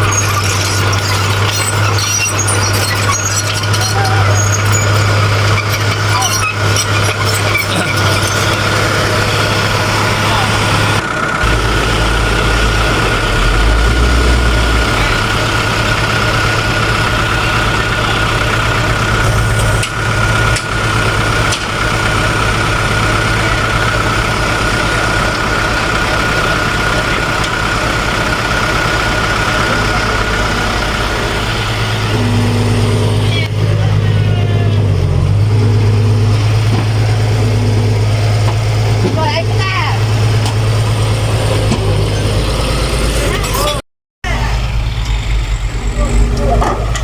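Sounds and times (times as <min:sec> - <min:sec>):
diesel machinery engine running: 0:00.0 - 0:47.0
high whine: 0:11.4 - 0:18.6, 0:30.6 - 0:38.6, 0:44.3 - 0:47.0.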